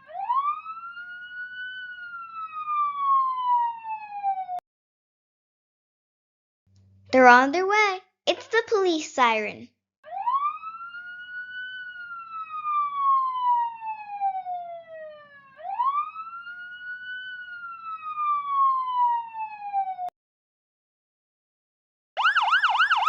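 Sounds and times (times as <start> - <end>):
fire truck siren wailing: 0.0 - 4.6, 10.1 - 20.1, 22.2 - 23.0.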